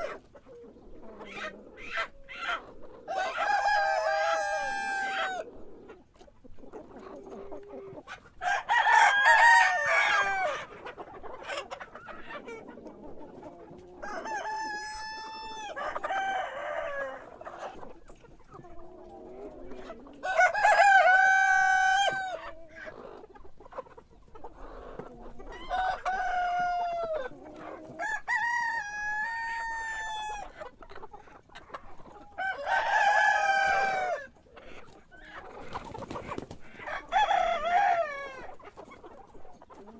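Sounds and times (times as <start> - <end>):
rooster crowing: 8.4 - 10.6, 20.2 - 22.4.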